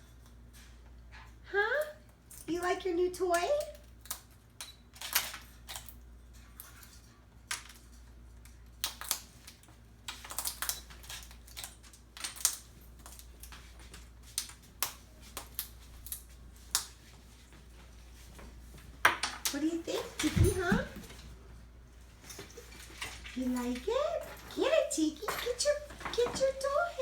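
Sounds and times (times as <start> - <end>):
parrot chewing toy snaps and crunches: 3.6 - 17.1.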